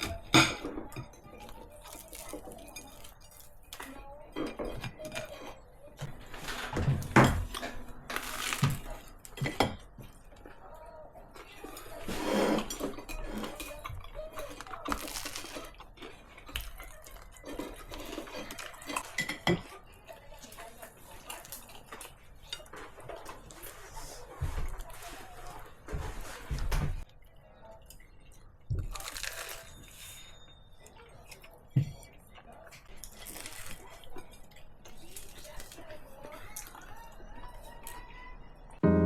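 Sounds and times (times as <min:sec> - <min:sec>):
dishes and cutlery clinking: 0:00.0 - 0:27.1.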